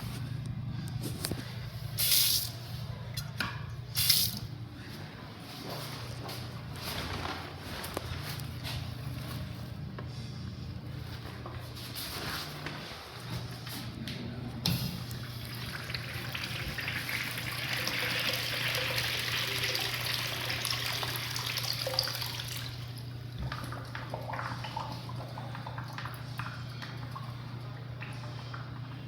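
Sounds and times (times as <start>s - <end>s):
steady low hum: 0.0s - 18.4s
toilet flushing water rushing: 14.7s - 28.0s.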